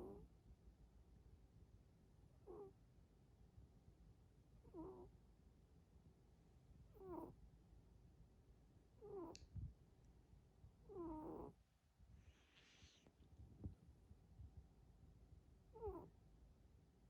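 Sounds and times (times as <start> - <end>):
cat snoring softly: 2.4 - 2.8, 4.6 - 5.1, 6.9 - 7.4, 10.9 - 11.6.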